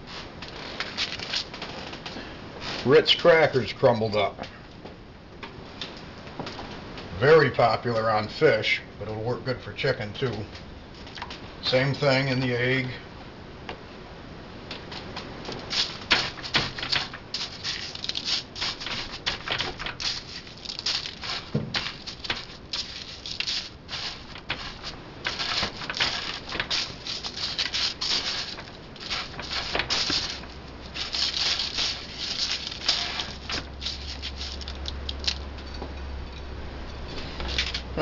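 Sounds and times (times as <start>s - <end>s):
low steady hum: 0.0s - 38.0s
cracker crumbs crackling: 15.0s - 35.6s.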